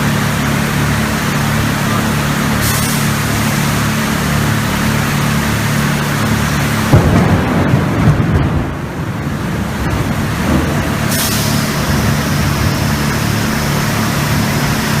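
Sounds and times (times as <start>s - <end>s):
hiss: 2.6s - 3.9s, 10.8s - 15.0s
thunder rumbling: 6.2s - 15.0s.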